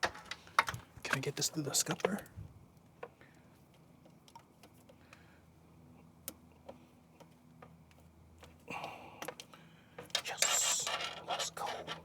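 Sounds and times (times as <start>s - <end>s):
faint clicks and taps: 6.2s - 8.6s.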